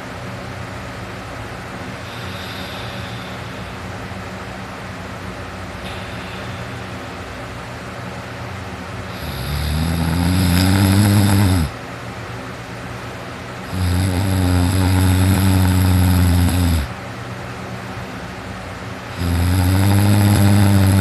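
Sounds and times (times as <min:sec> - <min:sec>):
person snoring heavily: 0:02.0 - 0:03.8, 0:05.8 - 0:07.0, 0:09.1 - 0:11.8, 0:13.6 - 0:17.0, 0:19.1 - 0:21.0.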